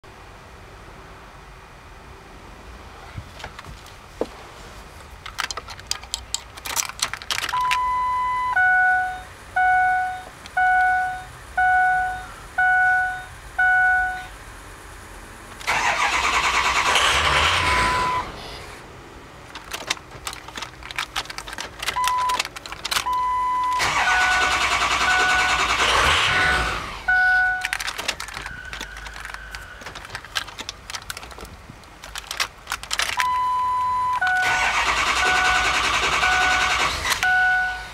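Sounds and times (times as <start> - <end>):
diesel engine cranking: 5.1 - 8.0, 15.5 - 18.8, 19.4 - 37.9
dash warning chimes beeping: 7.5 - 14.3, 17.6 - 18.3, 21.9 - 29.7, 33.2 - 37.9.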